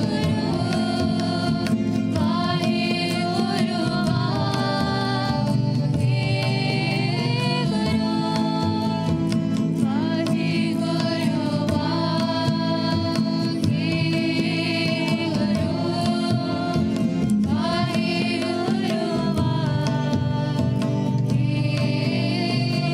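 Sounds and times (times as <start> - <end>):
hand drum strokes: 0.0 - 22.9
person singing long gliding notes: 0.0 - 22.9.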